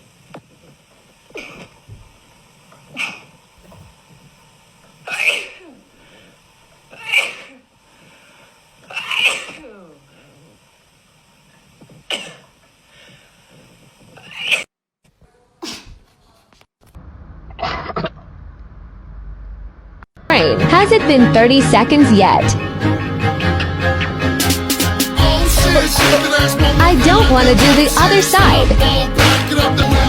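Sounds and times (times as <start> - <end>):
woman sneezing: 3.0 - 3.3, 5.1 - 5.8, 6.9 - 7.6, 8.9 - 10.1, 15.6 - 16.0.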